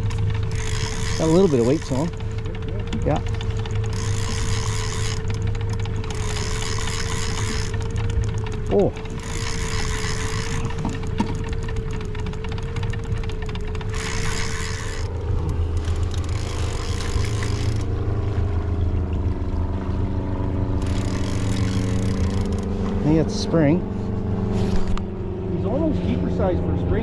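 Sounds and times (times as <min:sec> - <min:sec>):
rapid fine clicking: 0:00.0 - 0:17.9, 0:20.8 - 0:23.0
boat motor running: 0:00.0 - 0:27.0.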